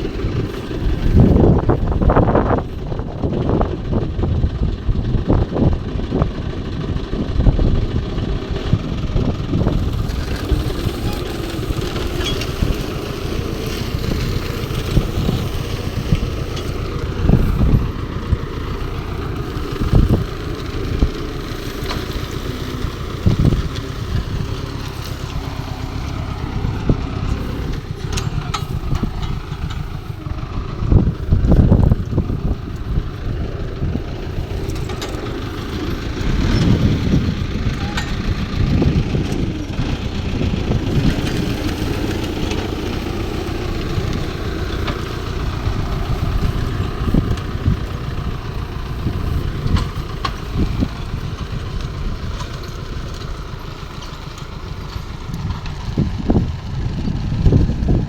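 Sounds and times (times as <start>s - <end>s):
low bumps: 0.0s - 6.3s, 7.4s - 58.0s
tractor diesel engine running: 0.0s - 58.0s.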